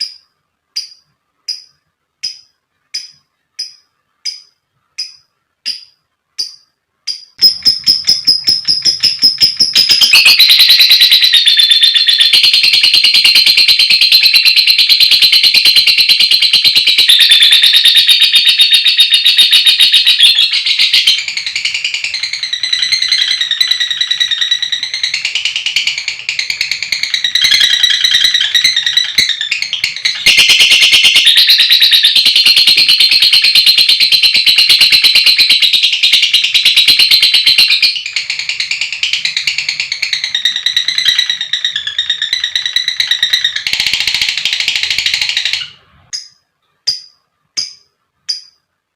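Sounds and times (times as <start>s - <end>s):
lovebird chattering trill: 0.0s - 48.6s.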